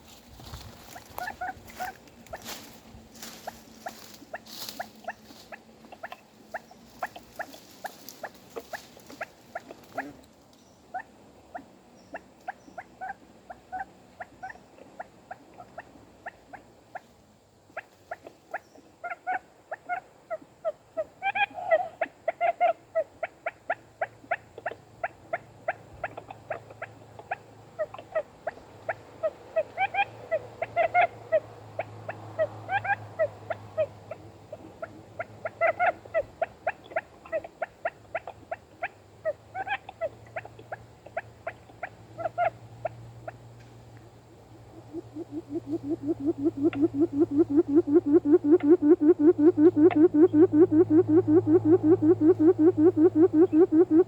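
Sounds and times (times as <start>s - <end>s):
rustling noise: 0.0s - 6.0s
quail chirping: 0.0s - 10.2s, 10.9s - 17.1s, 17.7s - 43.4s, 44.4s - 54.0s.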